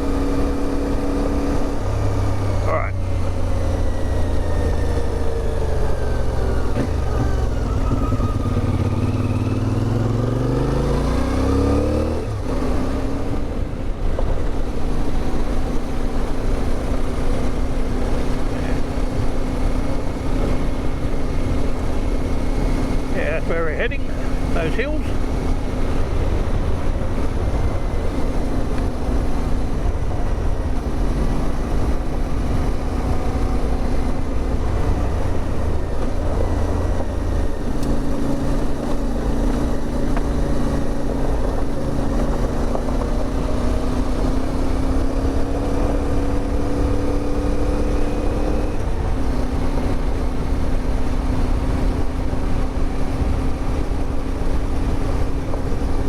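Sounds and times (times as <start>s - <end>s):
motorcycle engine cruising: 0.0s - 56.0s
wind noise: 11.2s - 56.0s.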